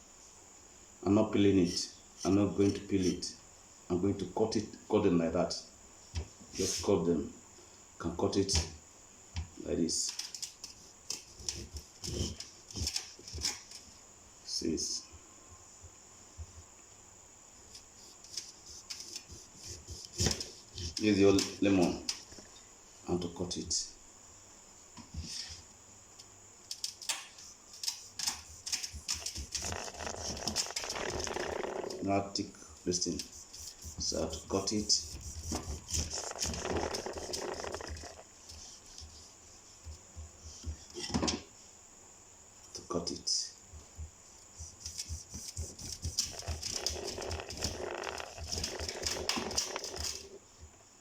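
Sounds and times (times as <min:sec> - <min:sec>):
scraping rustle: 0:06.5 - 0:07.2, 0:09.9 - 0:14.0, 0:17.6 - 0:22.6, 0:26.8 - 0:32.1, 0:32.8 - 0:41.7, 0:44.6 - 0:50.8.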